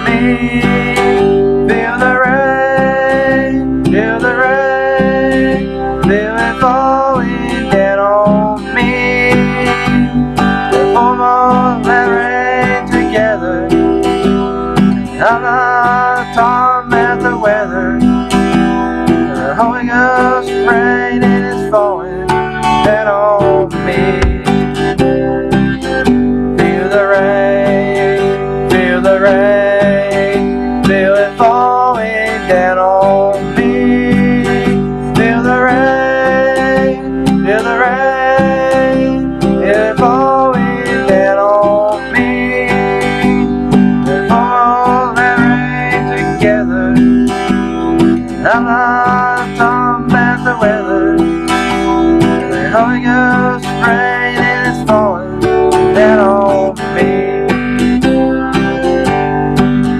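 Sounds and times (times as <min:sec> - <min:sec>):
acoustic guitar strumming: 0:00.0 - 0:59.9
person singing: 0:00.0 - 0:59.9.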